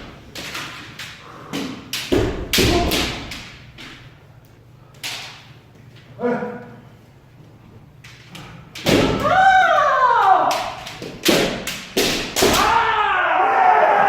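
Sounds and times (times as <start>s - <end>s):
bamboo sword strikes: 1.6s - 3.6s, 8.8s - 9.4s, 10.4s - 12.9s
person shouting: 9.2s - 10.8s, 12.6s - 14.0s.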